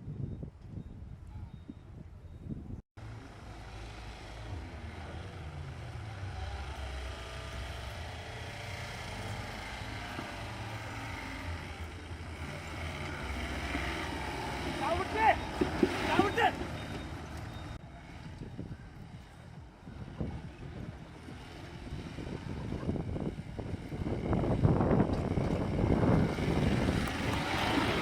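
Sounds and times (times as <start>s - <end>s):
off-road engine revving under load: 3.0s - 28.0s.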